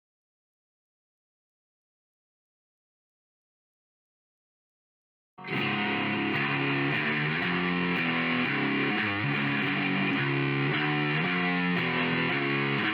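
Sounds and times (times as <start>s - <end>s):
distorted electric guitar music: 5.4s - 12.9s.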